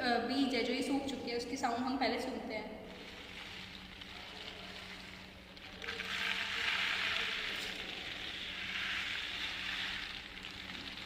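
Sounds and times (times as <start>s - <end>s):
dry seeds rattling in gourd: 2.8s - 11.0s.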